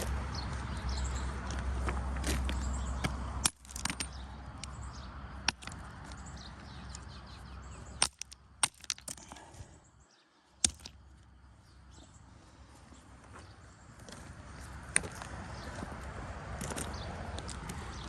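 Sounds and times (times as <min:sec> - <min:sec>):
stones striking stone: 0:02.2 - 0:07.1, 0:07.9 - 0:09.5, 0:10.6 - 0:11.1.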